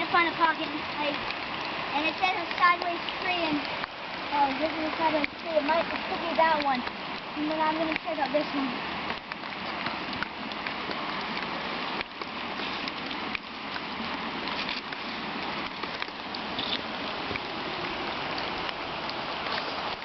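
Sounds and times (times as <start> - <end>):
creek water rushing: 0.0 - 20.0.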